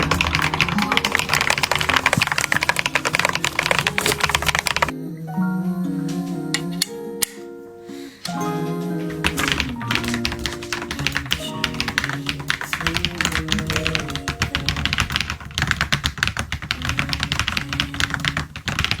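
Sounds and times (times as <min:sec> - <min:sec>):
mechanical keyboard typing: 0:00.0 - 0:04.9, 0:09.2 - 0:19.0
background music: 0:00.0 - 0:16.0.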